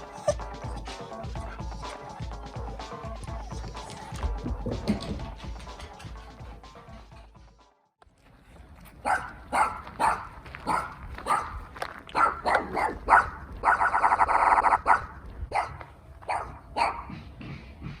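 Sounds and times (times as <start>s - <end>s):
dog making sharp bursts: 0.0s - 3.0s.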